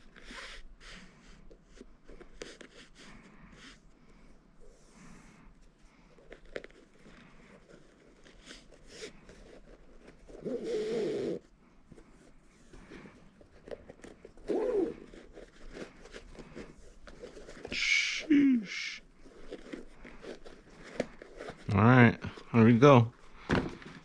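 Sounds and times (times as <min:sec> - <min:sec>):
zipping lace pull: 0:14.4 - 0:15.2.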